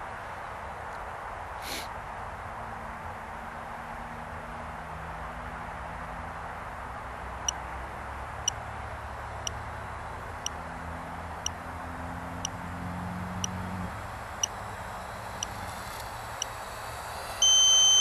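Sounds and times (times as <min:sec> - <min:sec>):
background hiss with low hum: 0:05.9 - 0:18.0
buzzer beeping: 0:17.4 - 0:18.0.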